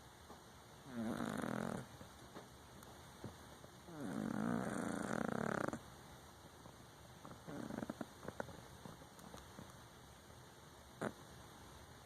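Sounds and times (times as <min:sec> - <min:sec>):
cat snoring: 0:00.8 - 0:01.9, 0:03.9 - 0:05.8, 0:07.2 - 0:08.5, 0:11.0 - 0:11.2.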